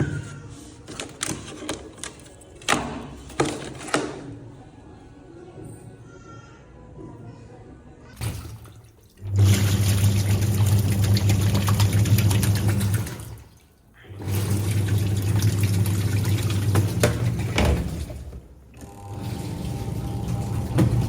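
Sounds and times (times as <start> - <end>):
water sloshing: 8.2 - 18.7
washing machine motor hum: 8.2 - 21.0.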